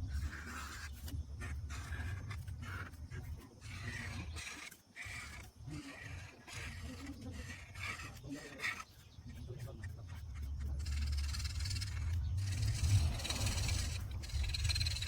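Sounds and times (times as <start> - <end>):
pencil scratching on paper: 0.0 - 15.0
low steady hum: 10.2 - 15.0.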